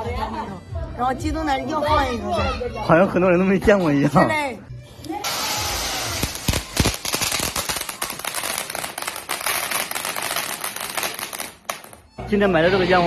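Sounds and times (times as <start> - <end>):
fireworks crackling pops: 5.2 - 12.1.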